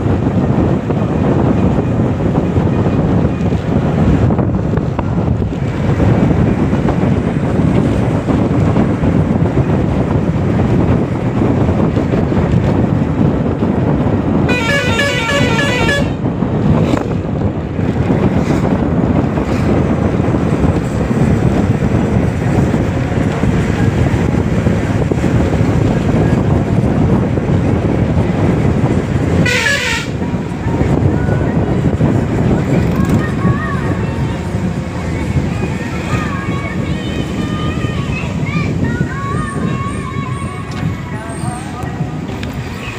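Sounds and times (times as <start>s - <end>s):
vehicle wind and road noise: 0.0s - 42.9s
warbling vehicle horn: 14.5s - 16.3s, 29.4s - 30.3s.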